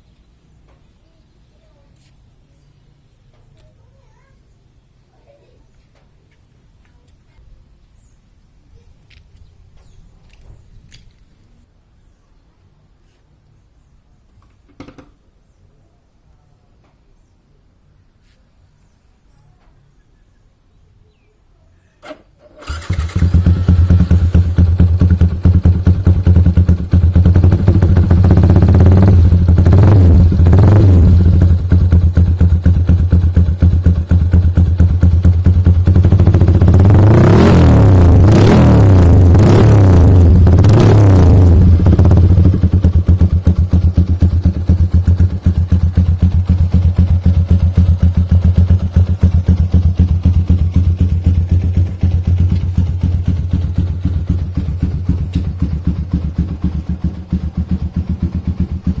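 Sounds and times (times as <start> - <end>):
motorcycle engine idling and revving: 22.6 - 59.0.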